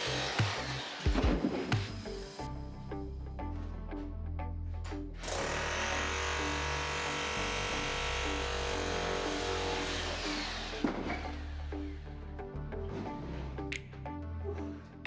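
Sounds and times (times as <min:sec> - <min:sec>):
power tool motor whining: 0:00.0 - 0:01.2, 0:05.2 - 0:11.7
background music: 0:00.0 - 0:15.0.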